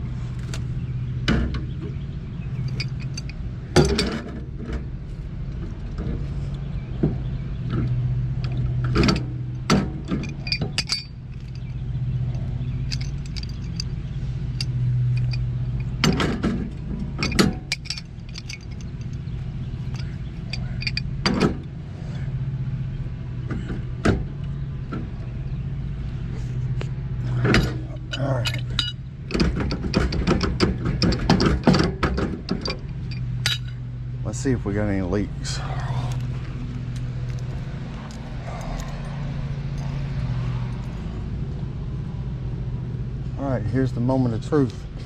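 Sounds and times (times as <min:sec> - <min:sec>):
low machine hum: 0:00.0 - 0:45.0
metallic clinks and knocks: 0:02.5 - 0:04.8, 0:07.7 - 0:21.6, 0:27.2 - 0:33.9, 0:36.1 - 0:41.0.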